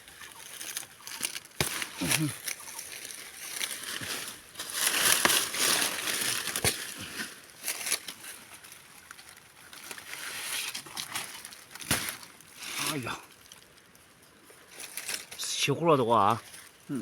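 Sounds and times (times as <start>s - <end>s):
leaves and stems rustling: 0.0s - 17.0s
stems snapping: 0.5s - 8.2s.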